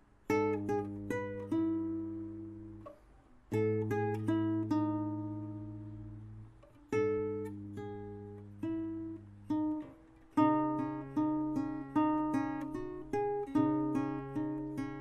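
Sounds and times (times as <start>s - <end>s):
acoustic guitar music: 0.0s - 15.0s.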